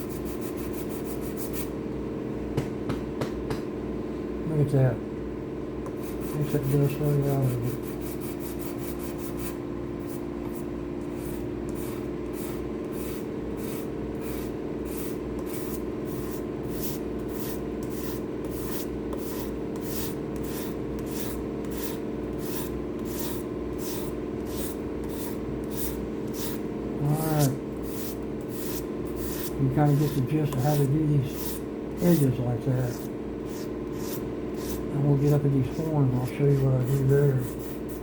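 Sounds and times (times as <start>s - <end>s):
steady low hum: 0.0s - 38.0s
sandpaper scraping: 11.2s - 26.6s, 27.2s - 38.0s.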